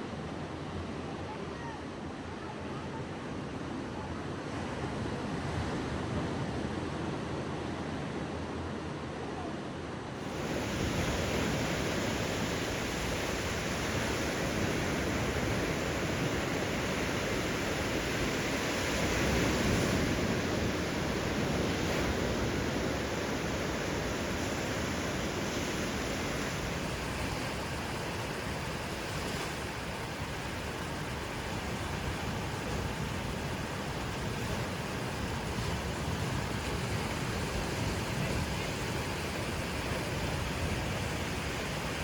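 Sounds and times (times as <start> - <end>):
ocean surf washing onto beach: 10.2 - 42.0.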